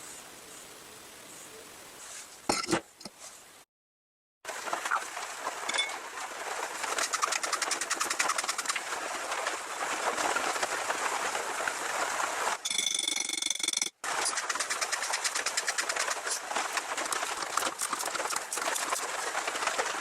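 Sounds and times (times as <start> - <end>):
high ringing tones: 12.6 - 13.9.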